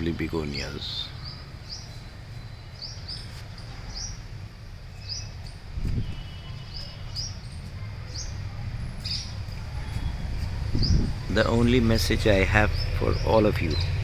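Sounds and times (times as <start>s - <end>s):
small birds chirping: 0.0s - 14.0s
steady low rumble: 4.2s - 14.0s.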